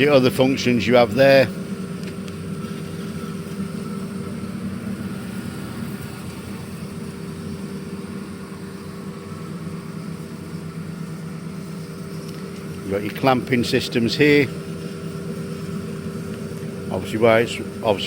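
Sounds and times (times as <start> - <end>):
bandsaw running: 12.3 - 18.0.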